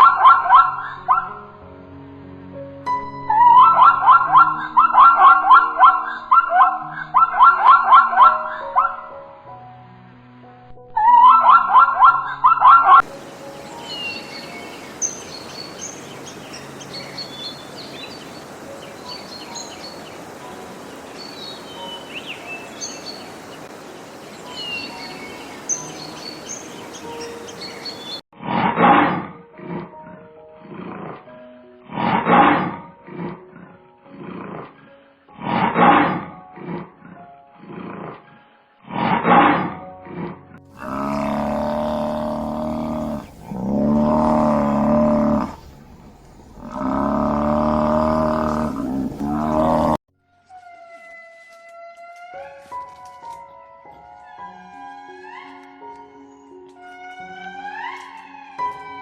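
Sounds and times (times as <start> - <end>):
small birds chirping: 12.4 - 28.2, 40.8 - 50.0
lion roaring: 40.7 - 50.0
low drawn-out animal call: 40.7 - 50.0
lion grunts: 40.8 - 50.0.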